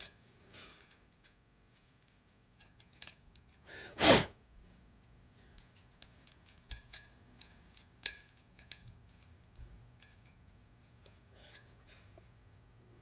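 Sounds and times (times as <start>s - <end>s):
small metal parts clicking: 0.0s - 1.4s, 2.0s - 3.7s, 5.5s - 11.7s.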